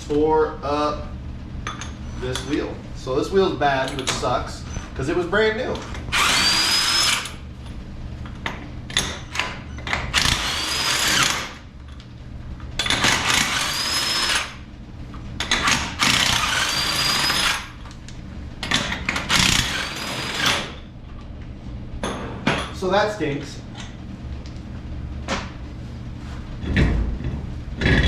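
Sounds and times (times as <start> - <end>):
power drill whining: 6.1 - 7.4, 10.1 - 11.5, 13.1 - 14.6, 15.9 - 17.8, 19.3 - 20.7.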